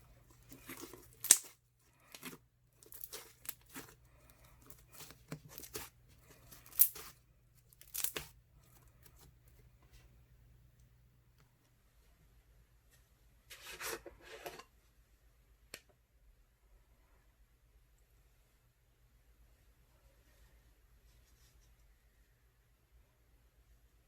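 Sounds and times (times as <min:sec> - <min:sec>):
slime crackling and popping: 0:00.0 - 0:08.4.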